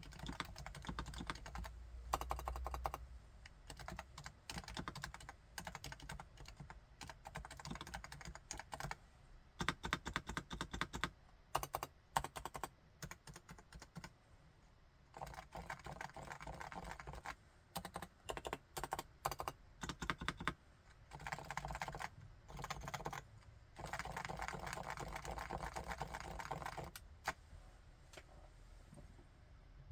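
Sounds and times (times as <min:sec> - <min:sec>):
muted keyboard typing: 0:00.0 - 0:03.0, 0:03.6 - 0:09.0, 0:09.6 - 0:14.1, 0:15.2 - 0:27.0.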